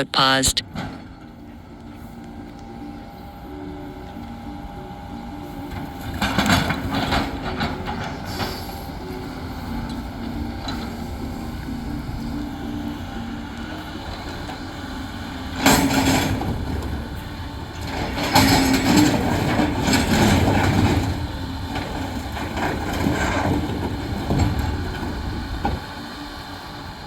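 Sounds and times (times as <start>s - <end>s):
diesel engine running: 0.0s - 27.0s.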